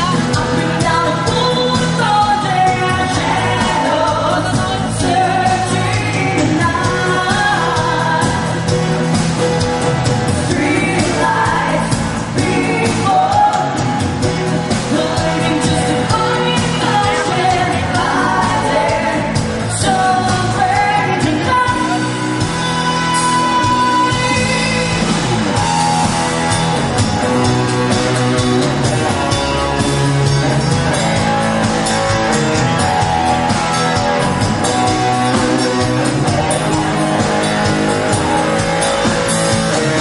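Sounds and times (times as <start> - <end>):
person singing: 0.0 - 8.9, 10.3 - 26.2
bass: 0.0 - 40.0
drums: 0.0 - 40.0.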